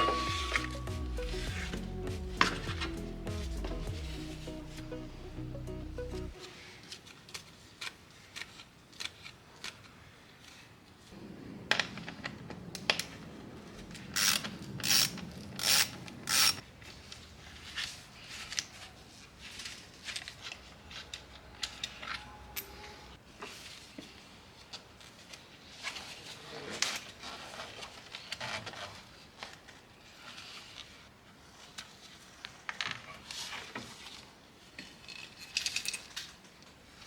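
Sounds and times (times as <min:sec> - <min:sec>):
hand tools clinking on metal: 0:00.0 - 0:00.9
ratchet strokes: 0:14.2 - 0:16.6.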